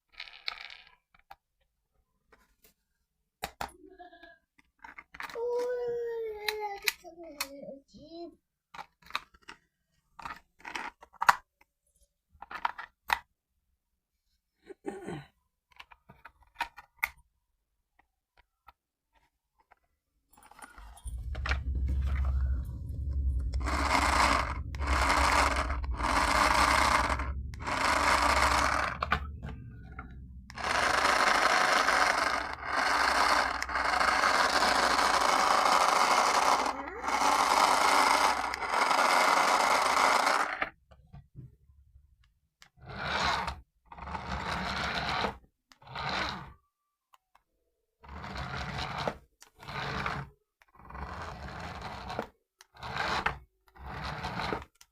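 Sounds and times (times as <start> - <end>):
toy car motor whirring: 23.6 - 29.2, 30.5 - 40.8, 42.6 - 46.5, 48.0 - 54.9.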